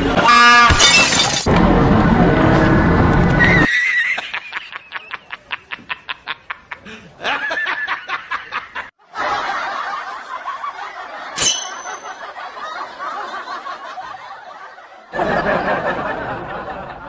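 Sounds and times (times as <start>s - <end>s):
crowd laughing and chattering: 9.0s - 17.0s.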